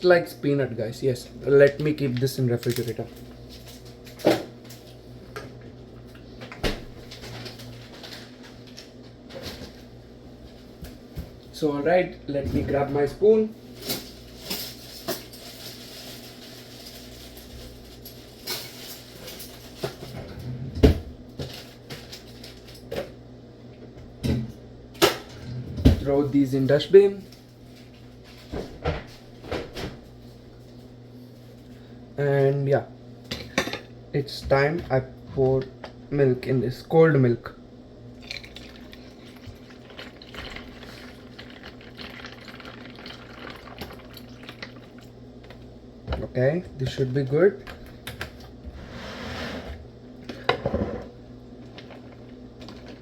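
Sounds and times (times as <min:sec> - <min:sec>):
milk pouring into cereal: 0:38.2 - 0:45.1.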